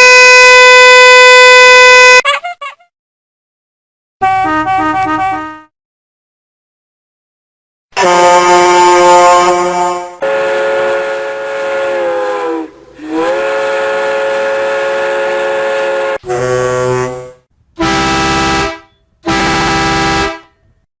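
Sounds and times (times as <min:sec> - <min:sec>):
buzzy horn blasts: 0:00.0 - 0:02.2, 0:04.2 - 0:05.7, 0:08.0 - 0:20.7
vehicle air horn blasts: 0:00.0 - 0:02.2, 0:04.2 - 0:05.6, 0:08.0 - 0:20.7.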